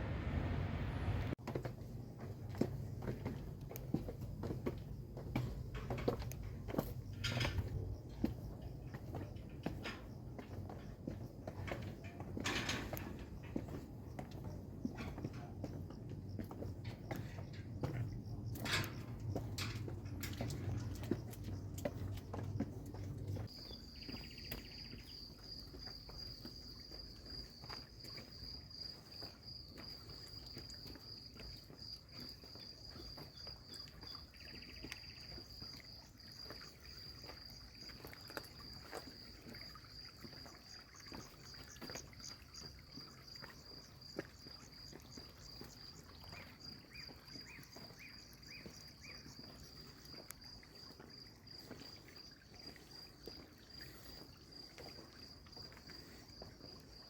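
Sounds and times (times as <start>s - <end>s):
cricket trilling: 4.6s - 57.0s
short low insect calls: 23.3s - 57.0s.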